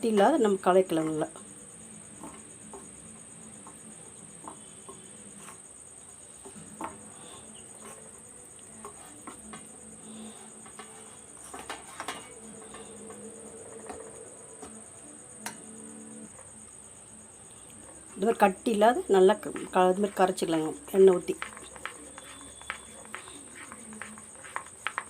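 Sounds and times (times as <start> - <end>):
steady high-pitched whine: 0.0 - 25.0
spoon scraping a bowl: 7.1 - 14.2, 19.3 - 25.0.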